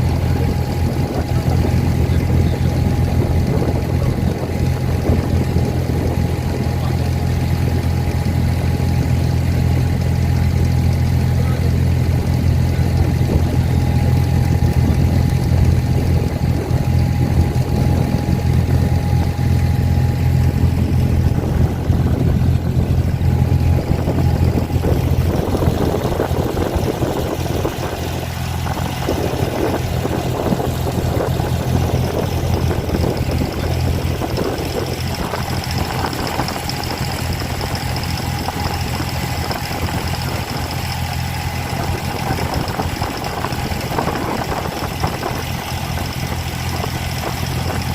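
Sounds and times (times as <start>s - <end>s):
boat engine humming: 0.0s - 47.9s.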